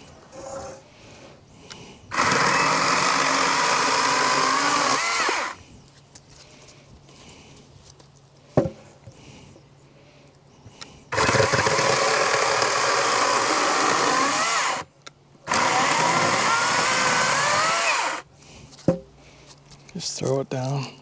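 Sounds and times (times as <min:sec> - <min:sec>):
battery chainsaw cutting wood: 0:02.1 - 0:05.6, 0:11.1 - 0:14.9, 0:15.5 - 0:18.2.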